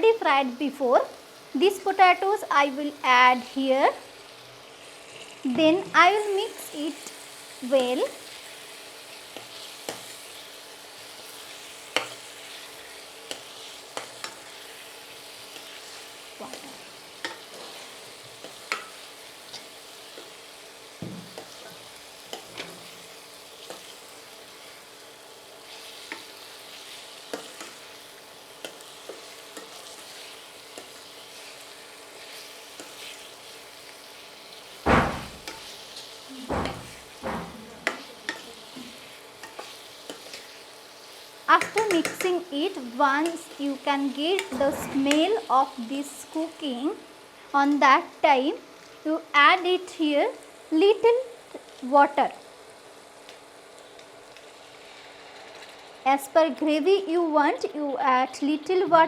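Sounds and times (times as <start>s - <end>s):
oil sizzling: 0.0s - 58.8s
loud knocks: 34.9s - 35.5s, 36.5s - 37.9s.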